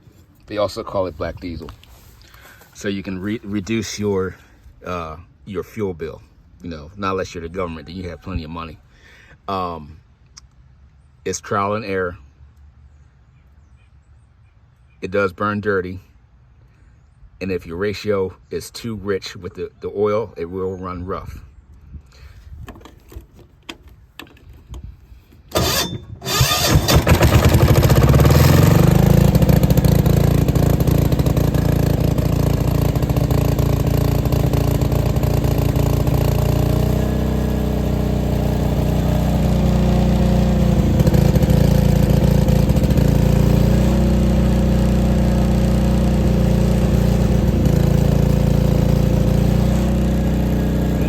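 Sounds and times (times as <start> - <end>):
engine cranking: 22.7 - 51.0
diesel generator engine running: 25.5 - 51.0.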